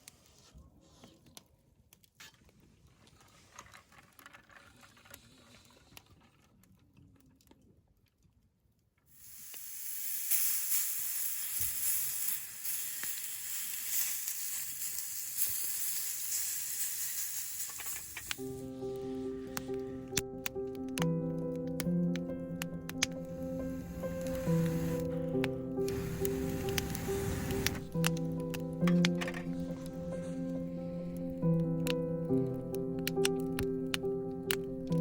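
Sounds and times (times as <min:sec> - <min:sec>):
meat sizzling on grill: 0:09.1 - 0:19.0, 0:23.2 - 0:30.7.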